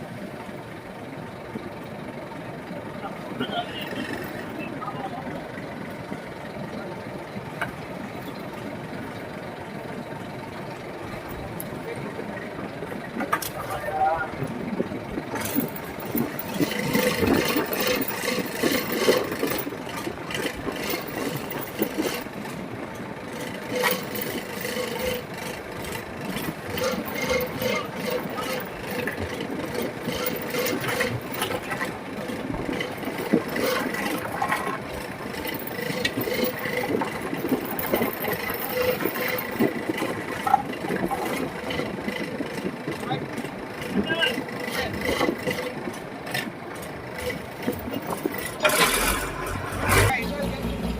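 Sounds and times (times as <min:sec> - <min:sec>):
boat engine running: 0:00.0 - 0:50.9
knocks and rattles: 0:15.2 - 0:22.6.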